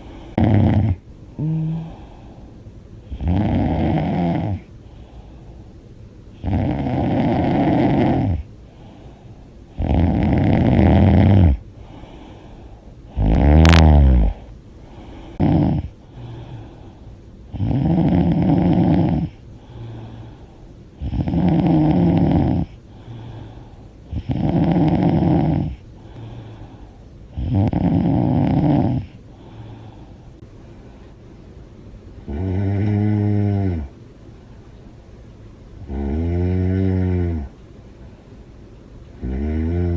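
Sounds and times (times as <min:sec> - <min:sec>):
woman snoring loudly: 0:00.0 - 0:02.0, 0:03.1 - 0:04.7, 0:06.4 - 0:08.4, 0:09.8 - 0:11.6, 0:13.1 - 0:14.4, 0:15.4 - 0:16.0, 0:17.5 - 0:19.3, 0:21.0 - 0:22.8, 0:24.1 - 0:25.8, 0:27.4 - 0:29.2, 0:32.3 - 0:33.9, 0:35.9 - 0:37.5, 0:39.2 - 0:39.9.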